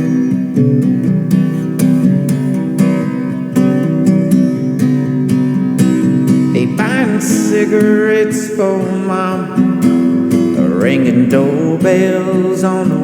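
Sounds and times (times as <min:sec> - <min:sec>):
acoustic guitar strumming: 0:00.0 - 0:13.0.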